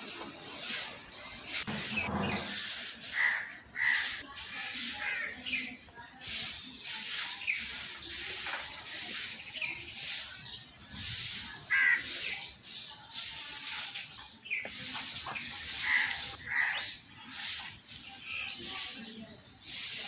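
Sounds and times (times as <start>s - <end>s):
crows cawing: 3.1s - 4.2s, 11.7s - 12.1s, 15.8s - 16.8s
steady hiss: 17.3s - 20.0s.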